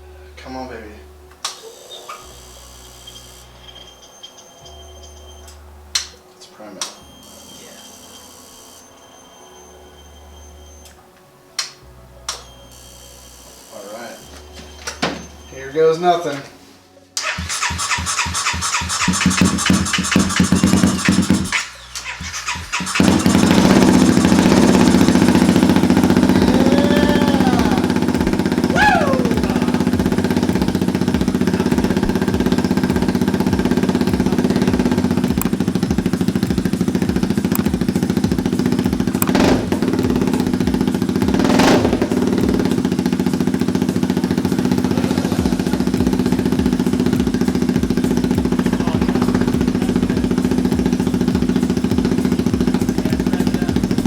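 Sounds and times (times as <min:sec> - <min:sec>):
motorcycle engine starting and running: 0:17.2 - 0:54.0.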